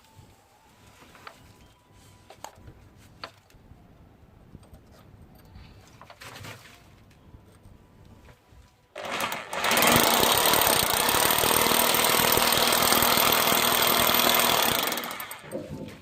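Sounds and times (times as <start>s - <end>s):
hammer drill boring into wall: 9.0s - 15.7s.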